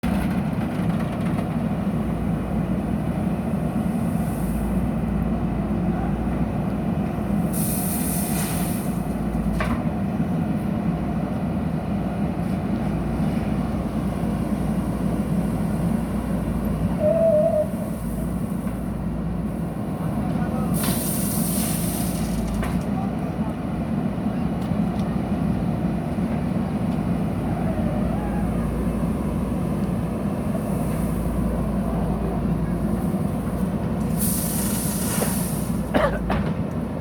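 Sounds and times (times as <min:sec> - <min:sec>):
short hiss: 0:07.5 - 0:09.0, 0:20.8 - 0:22.5, 0:34.0 - 0:35.9
diesel engine running: 0:17.7 - 0:37.0.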